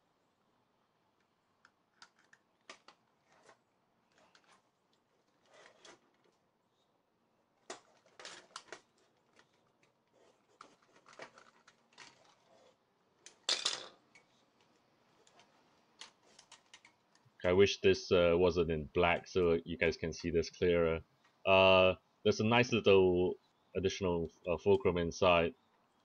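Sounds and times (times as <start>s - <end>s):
plastic scrape: 3.2s - 6.4s, 7.8s - 12.8s
plastic parts clicking and tapping: 7.6s - 12.6s, 13.2s - 17.3s.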